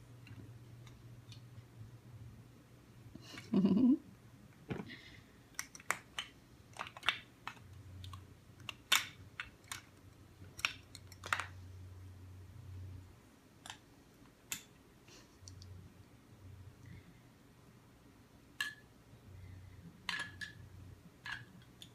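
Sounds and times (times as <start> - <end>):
plastic pieces clicking: 5.5 - 11.6, 20.0 - 20.6, 21.2 - 21.9.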